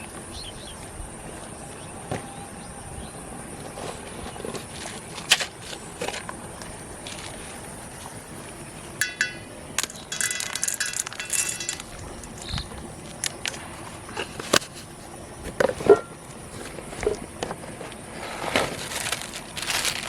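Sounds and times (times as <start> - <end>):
clinks and rattles: 9.0 - 13.6.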